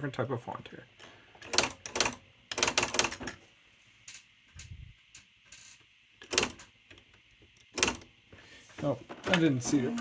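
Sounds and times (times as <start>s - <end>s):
typewriter print-hammer clicks: 1.4s - 3.3s, 6.2s - 6.7s, 7.7s - 8.1s.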